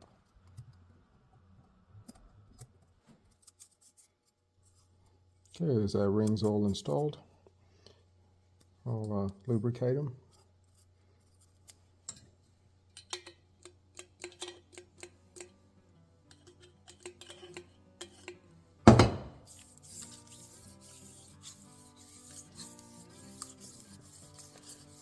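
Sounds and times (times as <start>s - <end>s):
loud knock: 18.9s - 19.4s.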